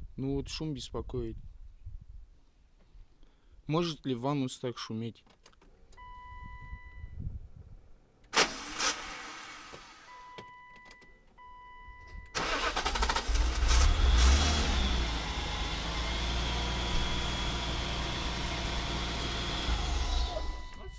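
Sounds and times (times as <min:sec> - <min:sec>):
engine cranking on starter: 0:08.3 - 0:10.1, 0:12.4 - 0:20.9
car engine idling: 0:12.4 - 0:20.9.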